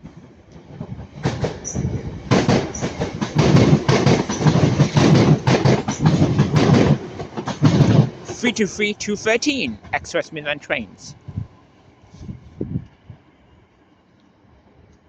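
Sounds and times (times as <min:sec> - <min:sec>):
train wheels clattering over joints: 0:01.2 - 0:08.4.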